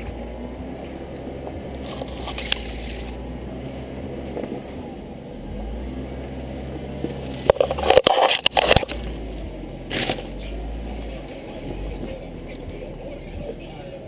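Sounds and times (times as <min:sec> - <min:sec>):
vehicle engine running at low speed: 0:00.0 - 0:14.0.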